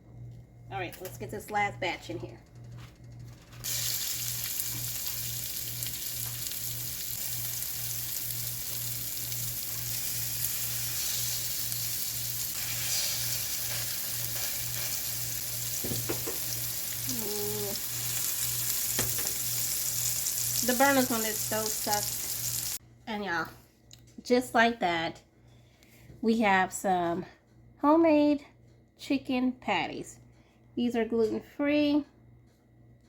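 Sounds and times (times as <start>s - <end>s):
low pulsing hum: 0.0s - 18.2s
patties sizzling in a pan: 3.6s - 22.8s.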